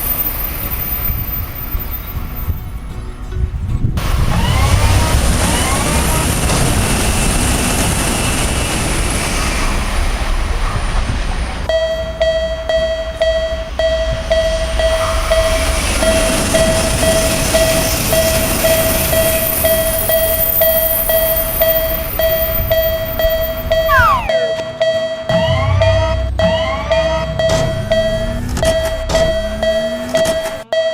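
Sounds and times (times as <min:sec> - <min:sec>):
railroad crossing bell ringing: 0:00.0 - 0:03.9, 0:11.7 - 0:30.9
train rumbling past: 0:00.0 - 0:30.7.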